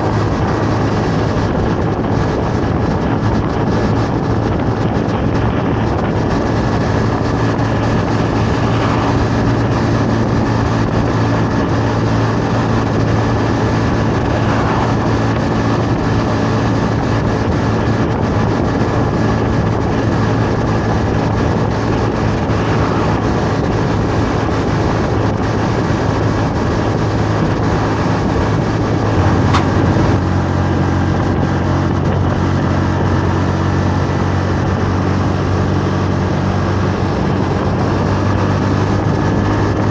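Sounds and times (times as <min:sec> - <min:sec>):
motorcycle engine running: 0:00.0 - 0:39.9
wind rushing over microphone: 0:00.0 - 0:39.9
short click: 0:29.2 - 0:30.2.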